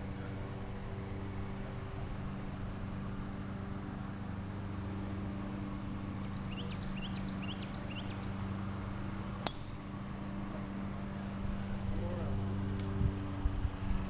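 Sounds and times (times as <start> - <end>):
steady low hum: 0.0 - 14.0
bird chirping: 6.3 - 8.4
golf club striking ball: 9.4 - 9.8.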